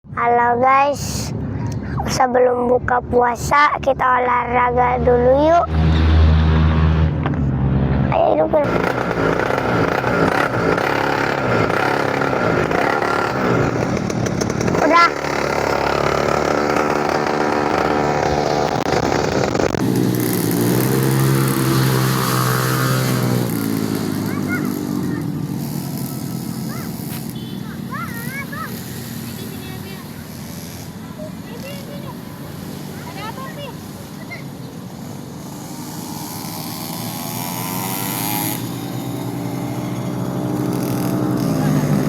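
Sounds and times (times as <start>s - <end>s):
mini-motorbike engine running: 8.1s - 42.0s.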